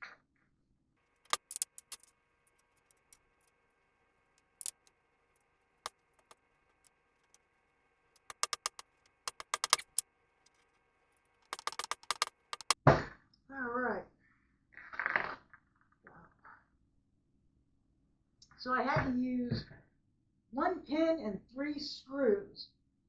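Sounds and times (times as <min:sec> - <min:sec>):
metal hardware clinking on frame: 0:01.3 - 0:02.1.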